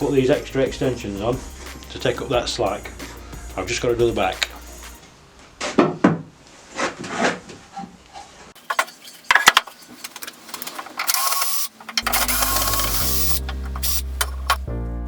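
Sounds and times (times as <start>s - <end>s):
background music: 0.0s - 5.0s, 12.0s - 15.0s
short mechanical buzzing: 11.1s - 14.0s.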